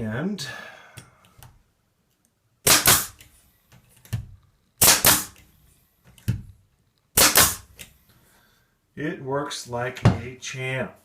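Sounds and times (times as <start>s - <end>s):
air stapler firing with gas hiss: 2.6s - 3.2s, 4.8s - 5.4s, 7.2s - 7.8s.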